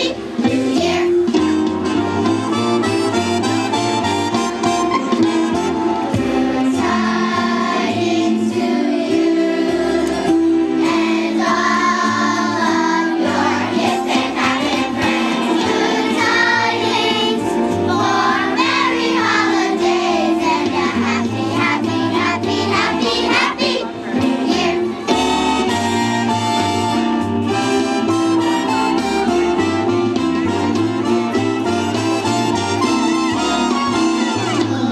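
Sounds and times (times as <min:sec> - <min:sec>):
children's choir singing: 0:00.0 - 0:01.4, 0:06.0 - 0:25.9, 0:34.4 - 0:34.9
instrumental accompaniment: 0:00.0 - 0:34.9.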